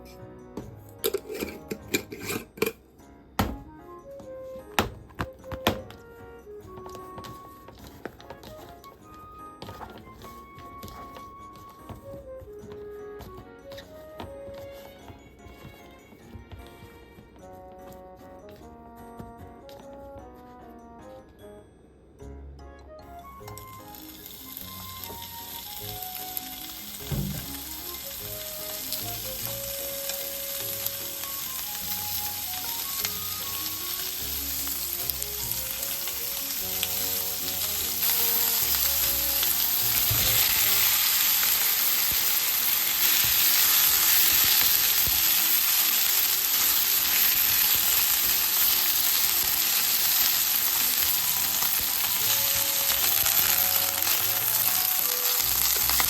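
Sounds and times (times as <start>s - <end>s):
food sizzling in frying pan: 23.4s - 56.0s
low knock: 27.0s - 27.6s.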